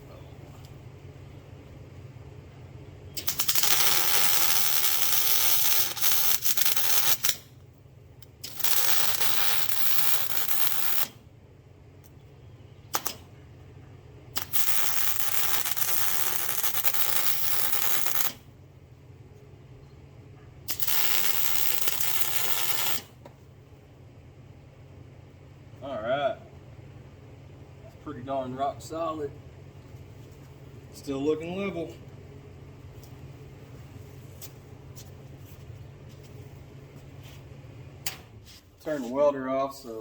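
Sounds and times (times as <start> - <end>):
welding arc hissing: 3.2 - 7.5, 8.2 - 11.2, 12.9 - 13.2, 14.3 - 18.4, 20.7 - 23.2.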